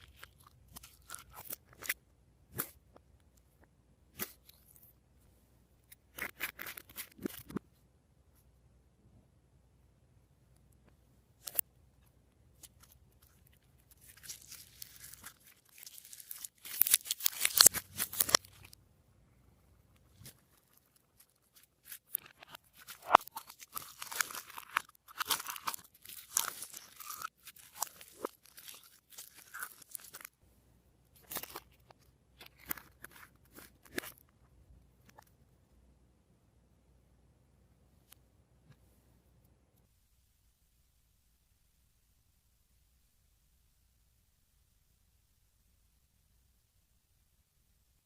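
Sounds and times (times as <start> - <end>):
slime crackling and popping: 13.9 - 18.8, 20.3 - 30.3.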